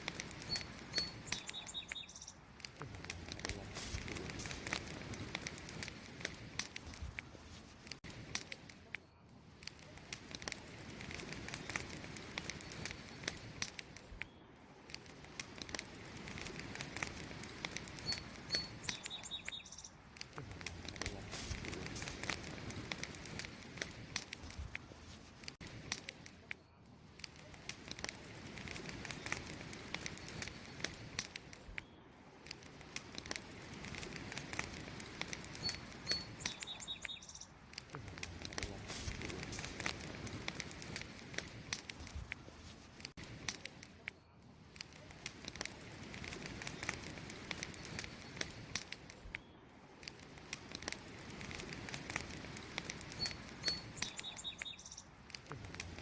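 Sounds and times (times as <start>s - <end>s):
campfire crackling and popping: 0.0s - 56.0s
hiss of burning: 0.0s - 56.0s
faint high bird chirp: 0.4s - 2.4s, 18.0s - 20.0s, 35.6s - 37.6s, 53.1s - 55.1s.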